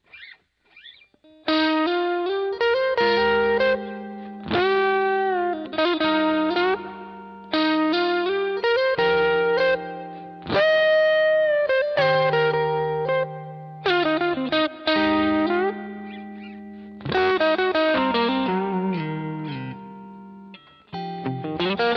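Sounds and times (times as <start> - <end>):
distorted electric guitar lead: 1.3 - 21.9.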